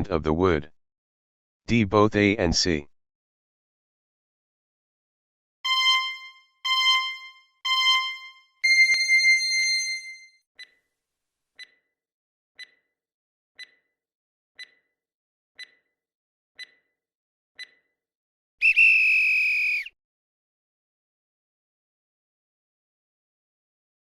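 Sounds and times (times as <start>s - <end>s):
electronic timer beeps: 5.7s - 10.7s, 12.6s - 12.9s, 13.6s - 13.9s, 14.6s - 14.9s, 15.6s - 15.9s, 16.6s - 16.9s, 17.6s - 17.9s.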